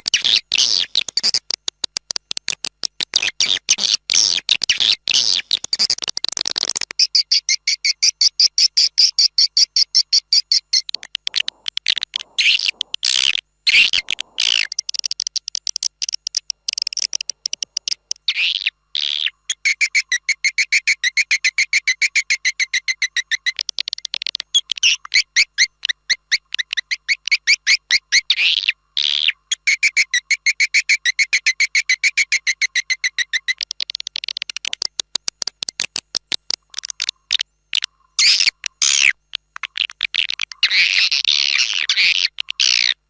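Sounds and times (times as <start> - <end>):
swiftlet clicks and trills: 0.0 - 3.8, 4.4 - 7.1, 10.7 - 18.7, 23.4 - 27.4, 33.6 - 42.9.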